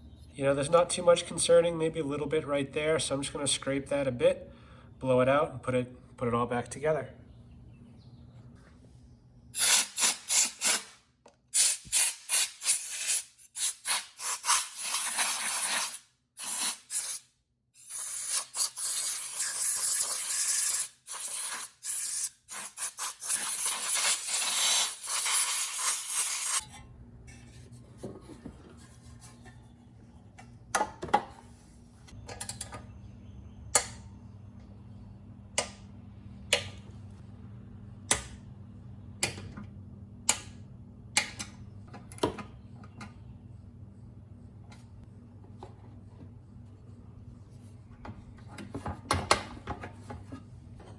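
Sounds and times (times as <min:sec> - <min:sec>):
compressed air blowing: 0:09.6 - 0:11.0, 0:11.6 - 0:26.6.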